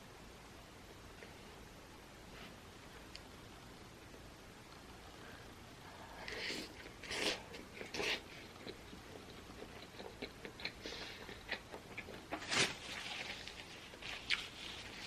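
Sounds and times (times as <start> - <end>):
wet chewing clicks: 7.8 - 12.5.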